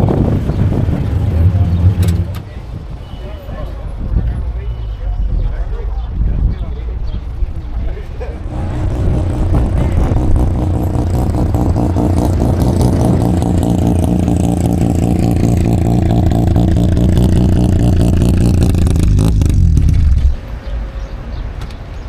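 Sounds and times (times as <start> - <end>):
car exhaust at low revs: 0.0 - 2.7, 8.2 - 20.4.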